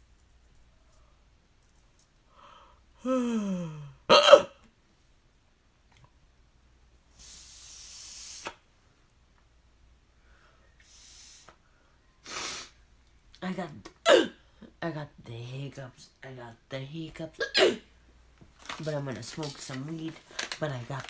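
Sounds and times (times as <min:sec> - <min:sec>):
breathy hiss: 0:02.3 - 0:03.8, 0:07.0 - 0:08.7, 0:10.1 - 0:12.9
man hiccuping: 0:03.0 - 0:04.6, 0:14.0 - 0:14.4, 0:17.4 - 0:17.9.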